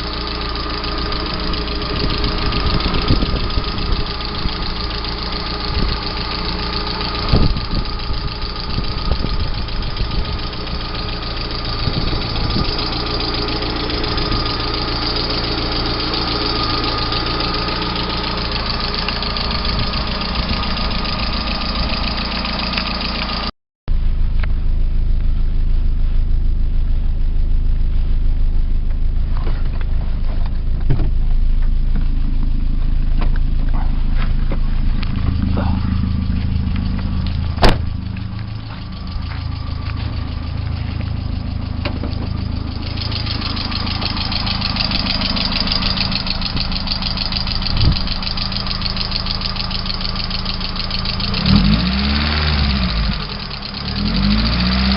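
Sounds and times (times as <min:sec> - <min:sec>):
car engine running with knock: 0:00.0 - 0:23.5, 0:28.8 - 0:54.9
high ticking: 0:00.0 - 0:23.5, 0:34.7 - 0:54.9.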